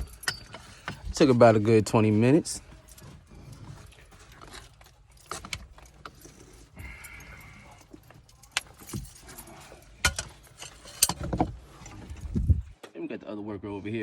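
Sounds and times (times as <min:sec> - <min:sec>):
metal tools clanking: 0:00.0 - 0:12.4.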